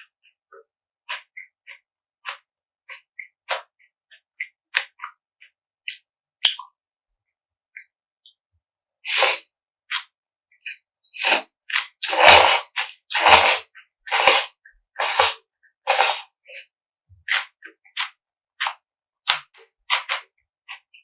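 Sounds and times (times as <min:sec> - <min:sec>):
wet chewing mouth clicks: 0:09.1 - 0:09.4, 0:11.2 - 0:16.2
loud airy noodle slurps: 0:09.1 - 0:09.5, 0:11.2 - 0:16.2.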